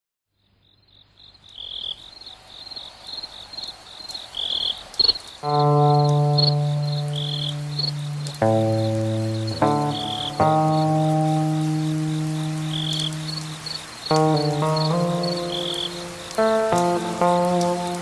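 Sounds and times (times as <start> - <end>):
lower cricket chirp: 0.4 - 18.0
crickets chirping: 0.6 - 18.0
guitar chord ringing: 5.4 - 18.0.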